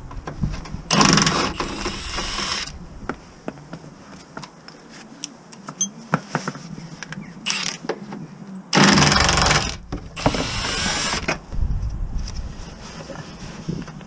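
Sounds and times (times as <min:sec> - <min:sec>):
power tool whirring: 0:00.9 - 0:02.7, 0:08.8 - 0:11.4.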